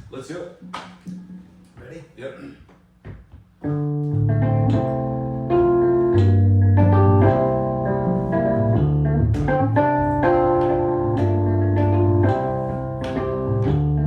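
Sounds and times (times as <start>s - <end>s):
bass line: 3.6s - 14.0s
organ-style keyboard chords: 3.6s - 14.0s.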